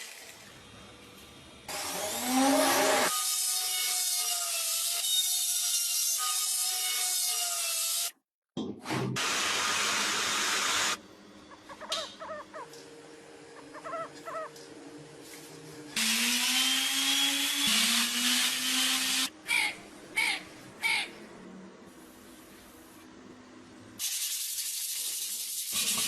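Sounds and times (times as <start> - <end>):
power tool noise: 0.0 - 8.1, 9.2 - 11.0, 16.0 - 19.3.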